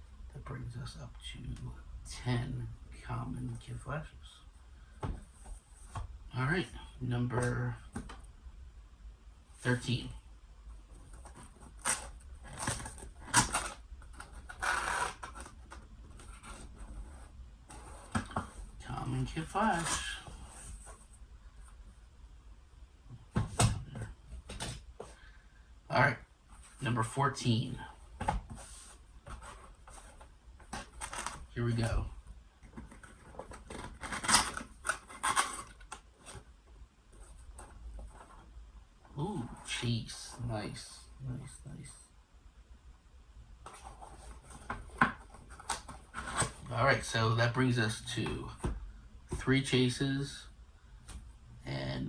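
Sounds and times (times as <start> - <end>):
packaging scraping and rustling: 11.1 - 18.7, 28.6 - 31.5, 32.7 - 36.5, 43.7 - 46.7
packaging rustle: 11.2 - 16.8.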